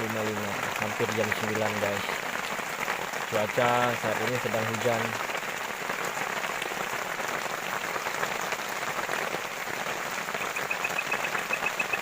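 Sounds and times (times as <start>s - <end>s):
rain pattering: 0.0s - 12.0s
cricket chirping: 10.4s - 12.0s.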